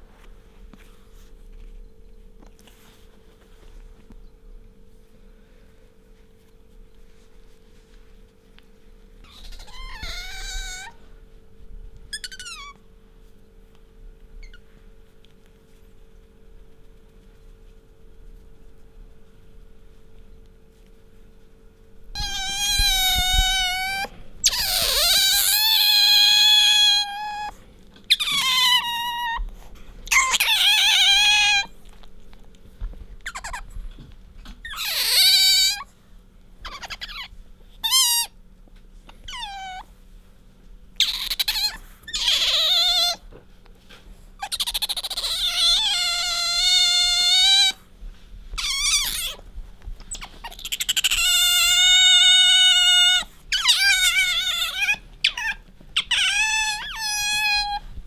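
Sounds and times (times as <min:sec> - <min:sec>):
otter squeaking: 0:09.2 - 0:11.0, 0:12.1 - 0:12.8, 0:22.2 - 0:31.7, 0:33.2 - 0:33.7, 0:34.6 - 0:35.8, 0:36.6 - 0:38.3, 0:41.0 - 0:43.2, 0:44.4 - 0:47.8, 0:48.6 - 0:49.4, 0:50.1 - 0:58.0.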